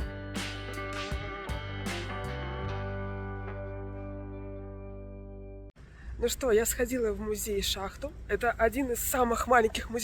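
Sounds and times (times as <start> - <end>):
held music chord: 0.0 - 5.7.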